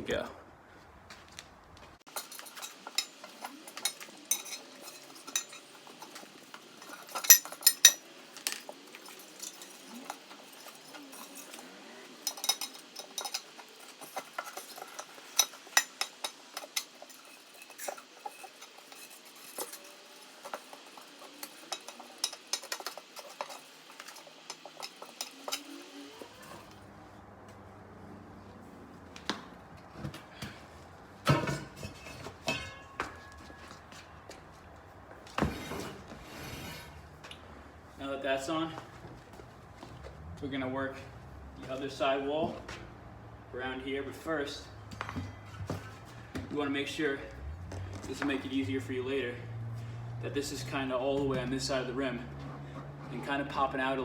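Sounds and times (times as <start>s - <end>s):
tire spoon scraping wheel rim: 2.1s - 26.8s, 35.3s - 37.2s.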